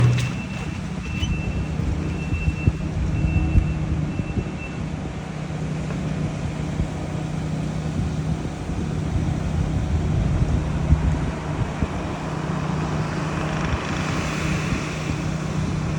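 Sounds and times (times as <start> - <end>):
heavy machinery engine droning: 0.0 - 4.2.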